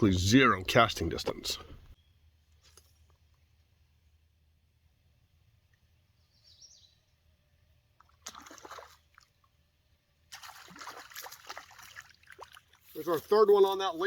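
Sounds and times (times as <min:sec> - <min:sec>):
water splashing and trickling: 0:07.8 - 0:13.9.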